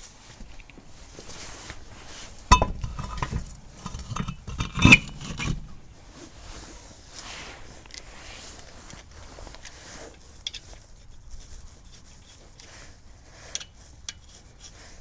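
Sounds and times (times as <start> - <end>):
light metal clicks and knocks: 2.5 - 5.9
ringing metal strikes: 2.5 - 6.1.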